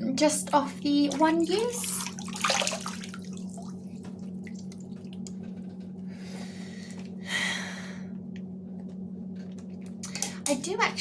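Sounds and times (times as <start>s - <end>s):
steady low hum: 0.0s - 11.0s
water dripping: 0.5s - 5.5s.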